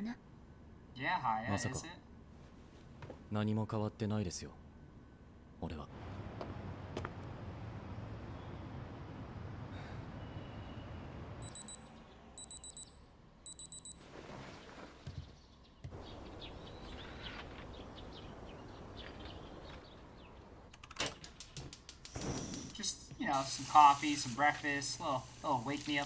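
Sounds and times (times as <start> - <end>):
low room hum: 0.0 - 20.8
alarm clock beeping: 11.4 - 14.0.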